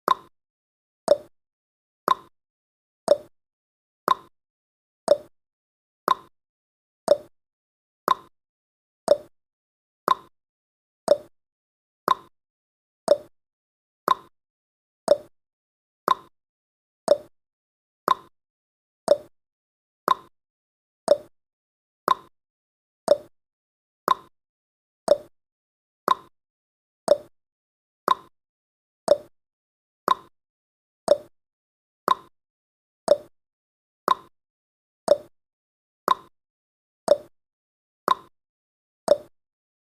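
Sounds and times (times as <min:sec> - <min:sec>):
clock-style ticking: 0:00.1 - 0:00.3, 0:07.1 - 0:07.3, 0:15.1 - 0:15.3, 0:17.1 - 0:17.3, 0:18.1 - 0:18.3, 0:19.1 - 0:19.3, 0:21.1 - 0:21.3, 0:23.1 - 0:23.3, 0:25.1 - 0:25.3, 0:27.1 - 0:27.3, 0:29.1 - 0:29.3, 0:31.1 - 0:31.3, 0:33.1 - 0:33.3, 0:35.1 - 0:35.3, 0:37.1 - 0:37.3, 0:39.1 - 0:39.3.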